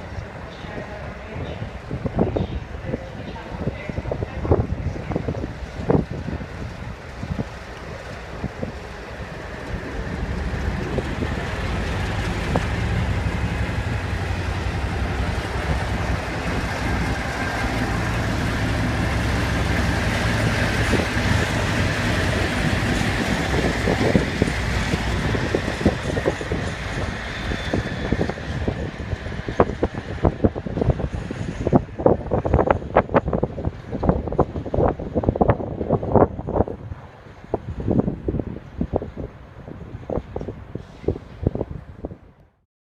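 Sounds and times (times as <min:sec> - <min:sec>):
locomotive engine drone: 0:00.0 - 0:42.5
wheels clicking over track: 0:05.9 - 0:27.3.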